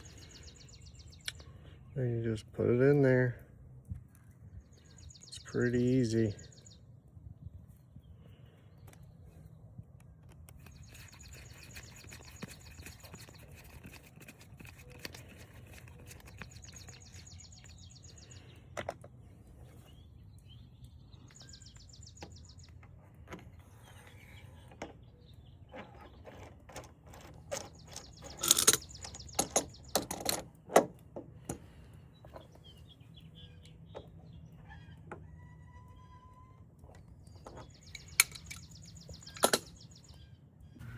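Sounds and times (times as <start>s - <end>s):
birds chirping in trills: 0.0s - 40.9s
low steady hum: 0.0s - 40.9s
tools clicking and knocking: 25.8s - 31.6s, 37.4s - 39.8s.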